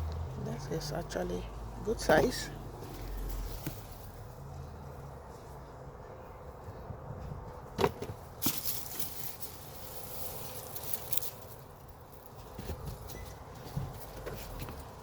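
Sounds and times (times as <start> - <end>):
soil and vines rustling: 2.0 - 4.6, 8.3 - 15.0.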